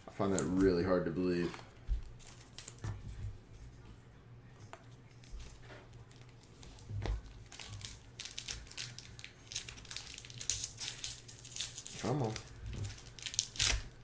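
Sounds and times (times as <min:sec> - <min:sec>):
crinkling wrapper: 0:05.1 - 0:14.0.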